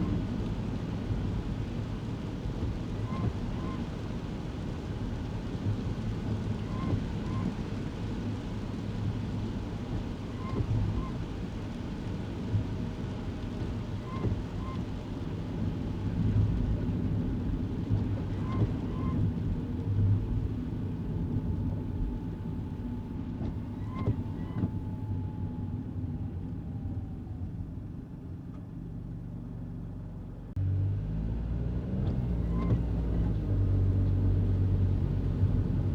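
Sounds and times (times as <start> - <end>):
engine and tyre rumble: 0.0 - 35.9
windscreen wipers squeaking: 2.6 - 4.4, 5.7 - 8.5, 9.5 - 25.4, 32.0 - 35.9.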